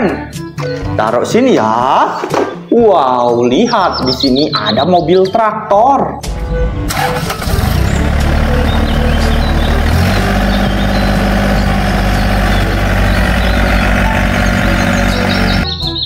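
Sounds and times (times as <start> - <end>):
tractor engine starting and idling: 6.8 - 15.7.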